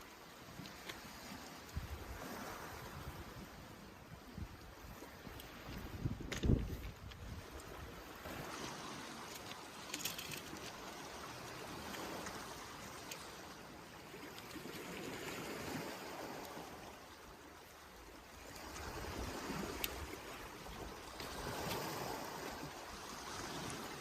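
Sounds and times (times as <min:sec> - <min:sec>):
water rushing in a stream: 0:00.0 - 0:24.0.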